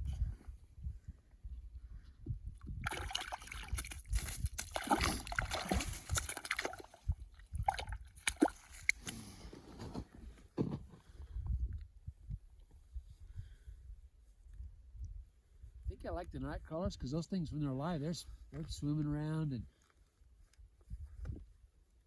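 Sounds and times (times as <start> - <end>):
water sloshing and splashing: 2.8 - 9.1.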